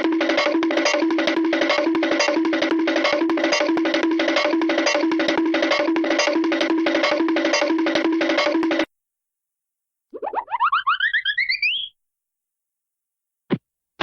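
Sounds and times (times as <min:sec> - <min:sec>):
rapid plucked notes: 0:00.0 - 0:08.9.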